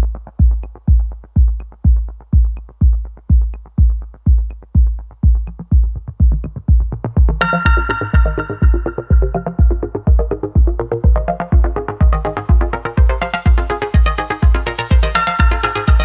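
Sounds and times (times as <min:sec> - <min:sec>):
kick drum beating: 0:00.0 - 0:16.0
synth line: 0:07.4 - 0:10.3.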